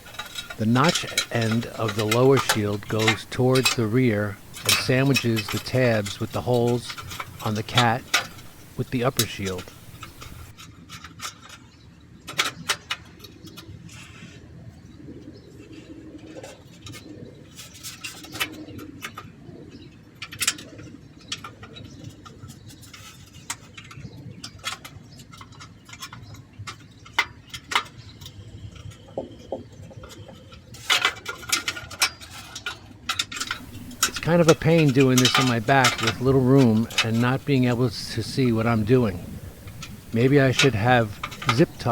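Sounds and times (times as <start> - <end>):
metal heat shields clinking: 0.0 - 10.5, 33.4 - 41.9.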